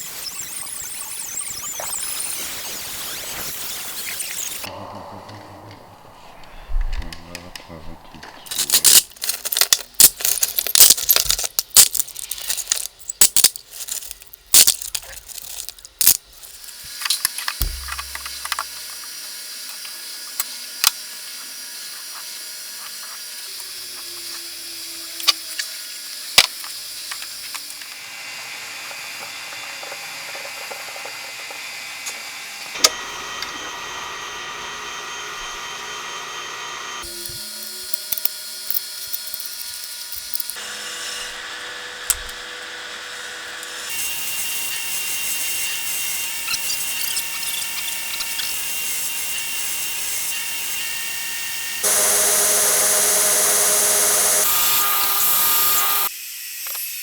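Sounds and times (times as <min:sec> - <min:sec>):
metal tools clinking: 0:08.5 - 0:16.8, 0:37.2 - 0:40.6.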